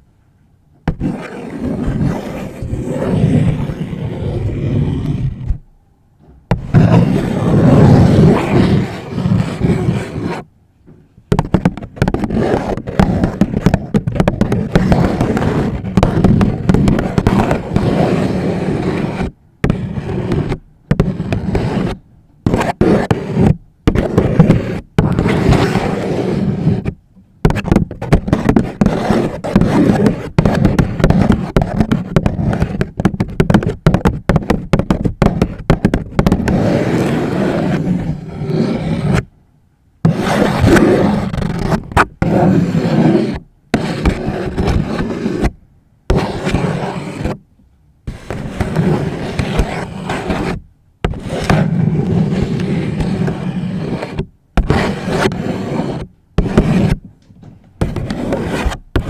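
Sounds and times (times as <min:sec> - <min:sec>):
fingernails scratching paper bag: 0:00.9 - 0:05.7, 0:06.5 - 0:10.5, 0:11.3 - 0:39.3, 0:40.0 - 0:47.4, 0:48.1 - 0:57.1, 0:57.8 - 0:59.0.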